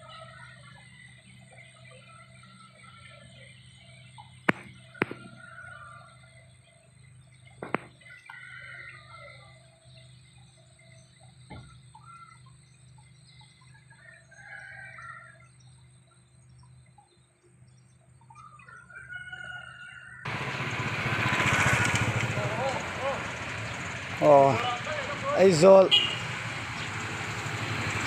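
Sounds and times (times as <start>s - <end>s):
birds calling: 0.0s - 28.0s
sharp click: 4.5s - 5.3s
faint rooster crowing: 4.7s - 6.7s, 7.8s - 10.0s, 13.6s - 15.8s, 18.3s - 20.8s.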